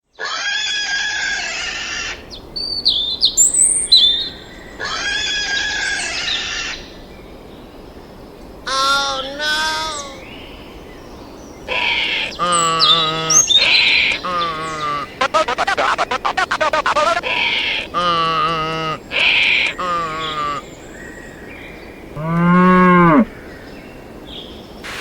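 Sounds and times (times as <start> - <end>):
long animal calls: 0.2 - 2.2, 11.7 - 20.7, 22.2 - 23.3.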